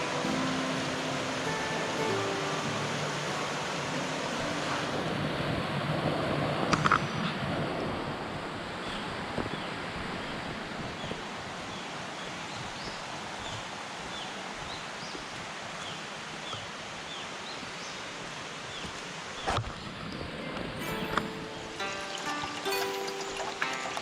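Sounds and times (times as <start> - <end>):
stream flowing: 0.0 - 24.0
short high chirps: 20.8 - 24.0.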